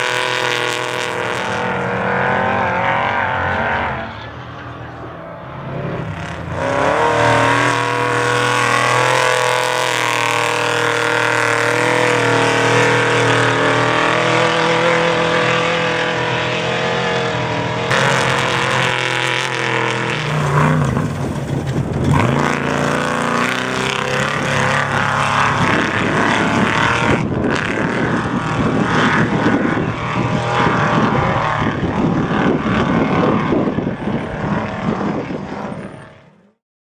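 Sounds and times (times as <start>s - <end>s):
truck engine running hard: 0.0s - 36.5s
knocks and rattles: 20.4s - 23.9s.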